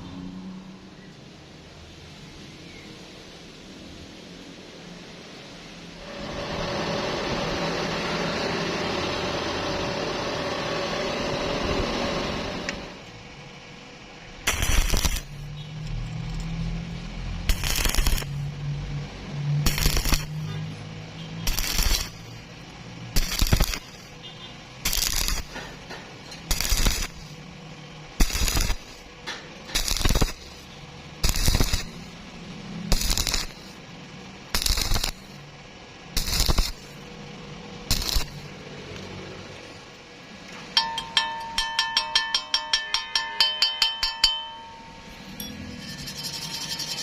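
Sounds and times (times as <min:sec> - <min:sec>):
rough strokes on metal: 0:21.4 - 0:22.4, 0:23.2 - 0:24.2, 0:24.8 - 0:25.8, 0:26.4 - 0:27.4, 0:28.2 - 0:29.0, 0:29.7 - 0:32.1, 0:32.9 - 0:33.8, 0:37.9 - 0:38.5, 0:45.2 - 0:47.0
ringing metallic taps: 0:40.7 - 0:47.0.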